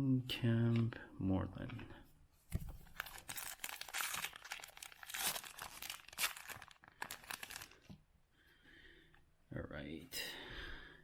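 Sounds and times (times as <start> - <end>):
plastic wrapper crinkling: 2.6 - 8.0.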